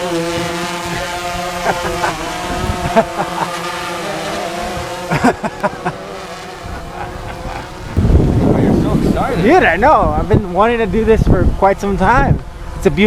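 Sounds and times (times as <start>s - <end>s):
drone propellers humming: 6.6s - 10.0s.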